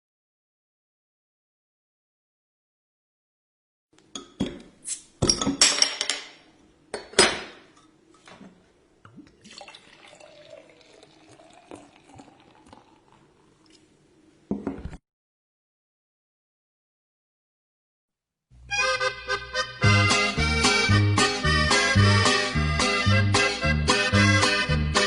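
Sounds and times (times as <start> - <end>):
bottle and glass clinking: 5.2 - 6.2
beer fizzing and pouring: 9.0 - 13.8.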